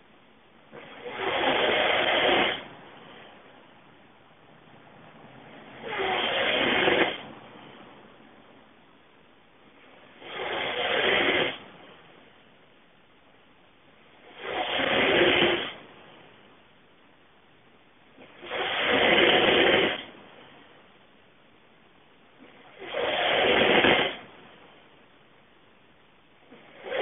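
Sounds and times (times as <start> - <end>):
quiet breathing: 0.7 - 3.9
person snoring loudly: 0.8 - 2.7, 5.8 - 7.2, 14.3 - 15.8, 18.3 - 20.1, 22.7 - 24.2.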